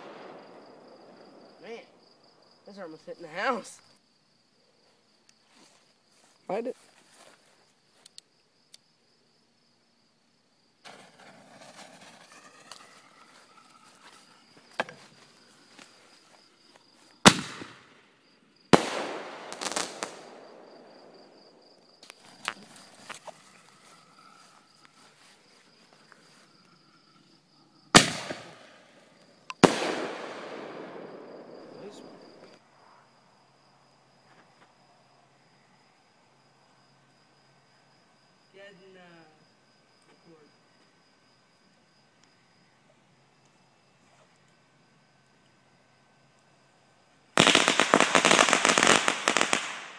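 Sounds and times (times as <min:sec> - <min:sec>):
fireworks bangs: 0:00.0 - 0:01.9, 0:10.8 - 0:15.2, 0:17.2 - 0:18.0, 0:18.7 - 0:23.4, 0:27.9 - 0:29.0, 0:29.6 - 0:32.6, 0:47.4 - 0:49.9
crickets chirping: 0:00.0 - 0:49.9
fireworks crackling and popping: 0:10.8 - 0:16.1, 0:17.2 - 0:18.0, 0:18.7 - 0:23.8, 0:27.9 - 0:32.6, 0:47.4 - 0:49.9.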